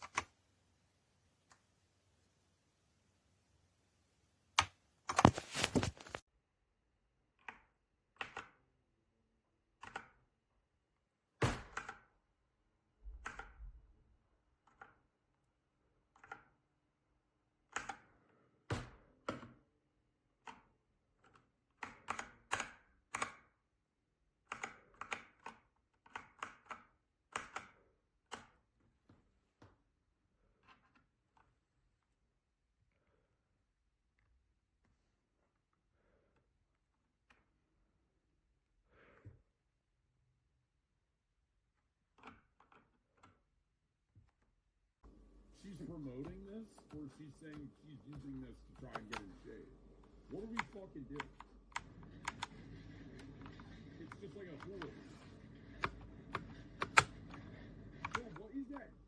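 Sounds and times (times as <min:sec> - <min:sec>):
mechanical keyboard keystrokes: 0:46.2 - 0:49.3, 0:50.4 - 0:58.9.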